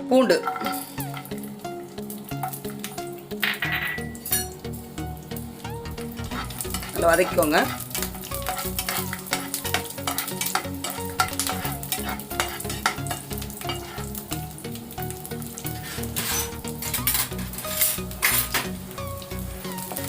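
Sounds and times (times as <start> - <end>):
garlic sizzling in oil: 0.0 - 20.0
spatula scraping pan: 5.8 - 14.3, 15.5 - 18.8.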